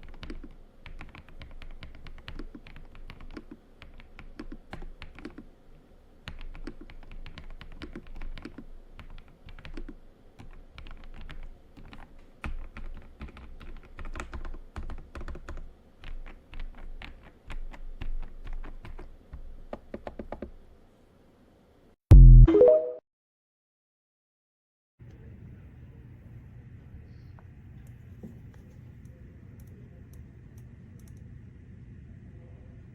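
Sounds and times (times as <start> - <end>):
mechanical keyboard typing: 0.0 - 5.5, 6.3 - 20.6.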